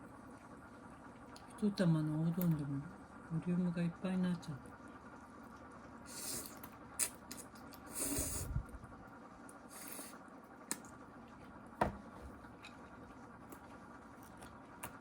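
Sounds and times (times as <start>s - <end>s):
slurping noodles: 6.1s - 8.6s, 9.7s - 10.2s.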